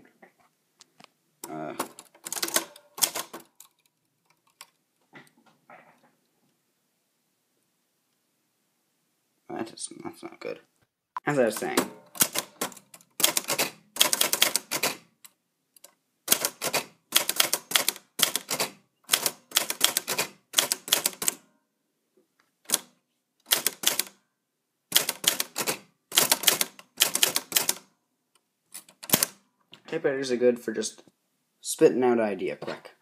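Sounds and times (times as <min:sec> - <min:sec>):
typewriter keys clicking: 0:01.8 - 0:04.7, 0:11.5 - 0:15.0, 0:15.8 - 0:21.4, 0:23.5 - 0:24.2, 0:24.9 - 0:27.8, 0:28.8 - 0:29.4.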